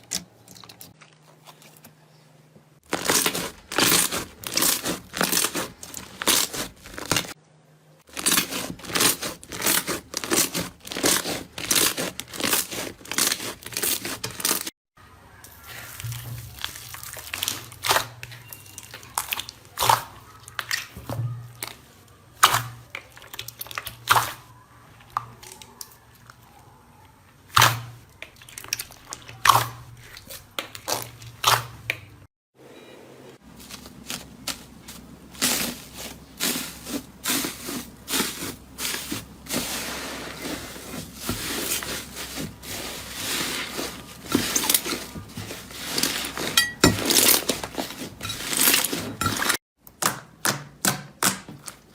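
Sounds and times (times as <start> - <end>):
slime crackling and squishing: 2.8 - 7.4, 8.0 - 14.7, 15.4 - 26.4, 33.5 - 49.6.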